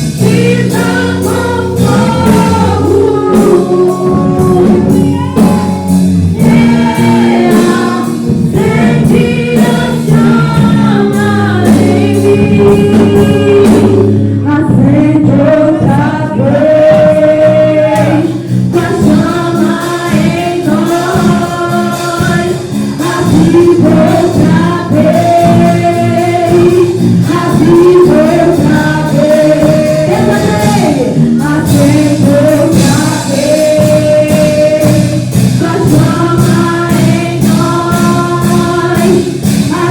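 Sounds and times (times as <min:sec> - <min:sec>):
group singing gospel song: 0:00.0 - 0:39.9
instrumental accompaniment: 0:00.0 - 0:39.9.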